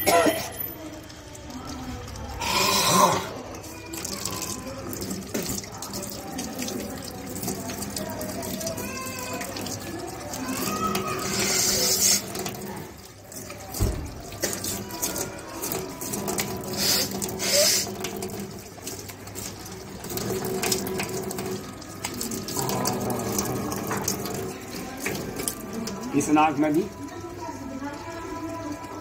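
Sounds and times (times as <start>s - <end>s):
water splashing down: 0.0s - 27.4s.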